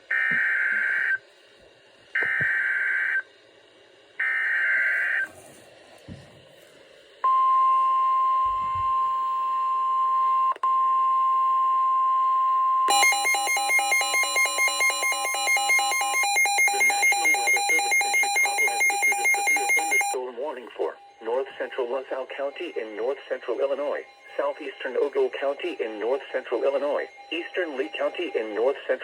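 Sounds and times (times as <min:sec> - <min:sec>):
pulsing alarm tone: 0:02.2 - 0:03.2, 0:12.9 - 0:20.2.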